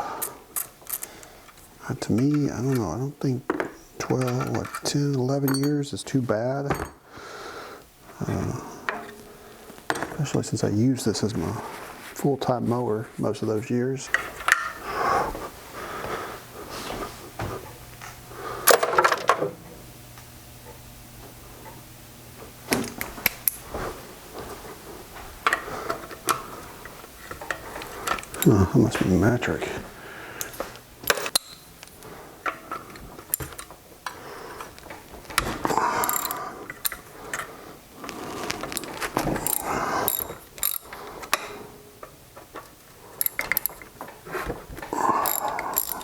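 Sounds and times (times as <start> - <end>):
tools clicking on metal: 31.0 - 33.7, 34.7 - 37.5, 38.7 - 41.6, 42.6 - 44.0, 44.9 - 46.0
ratchet wrench clicking: 36.0 - 37.0, 39.4 - 41.4, 43.2 - 43.8, 45.2 - 46.0.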